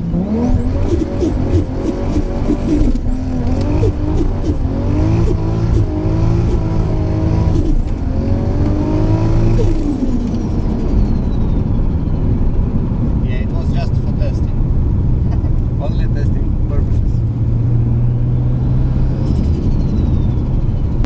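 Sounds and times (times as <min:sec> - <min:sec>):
car engine accelerating hard: 0:00.0 - 0:11.7
high turbo whistle: 0:00.5 - 0:07.8.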